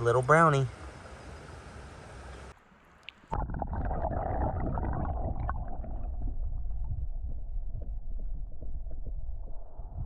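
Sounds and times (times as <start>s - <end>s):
muffled underwater rumble: 3.3s - 10.0s.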